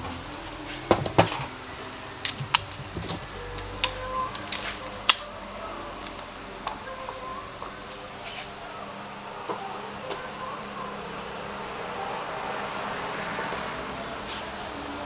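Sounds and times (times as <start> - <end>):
faint steady hum: 0.0 - 15.0
tools and parts clinking: 2.2 - 5.4.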